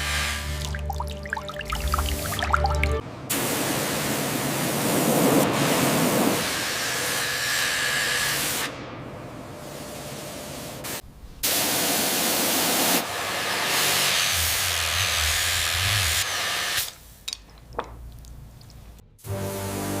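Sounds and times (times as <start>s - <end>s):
high-pressure spray hissing on metal: 3.3s - 5.0s, 5.6s - 8.7s, 9.6s - 16.9s.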